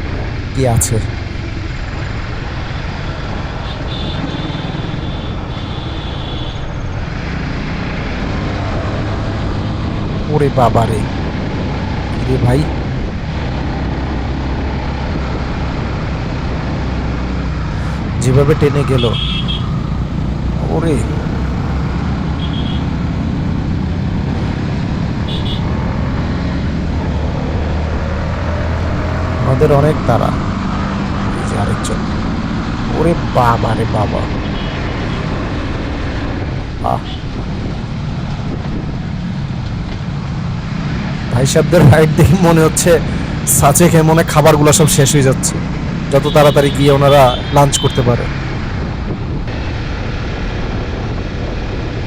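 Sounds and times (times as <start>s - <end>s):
wind rushing over microphone: 34.2s - 43.7s, 48.3s - 52.0s
wind noise on microphone: 48.6s - 52.0s.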